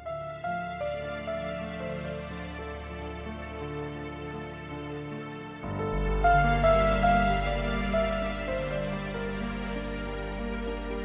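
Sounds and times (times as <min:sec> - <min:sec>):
slow gentle background music: 0:00.0 - 0:11.0.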